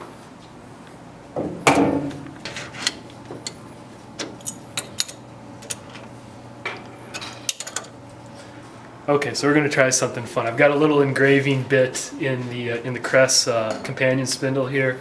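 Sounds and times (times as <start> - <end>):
low machine hum: 0.1 - 13.4
loud knock: 1.4 - 2.4.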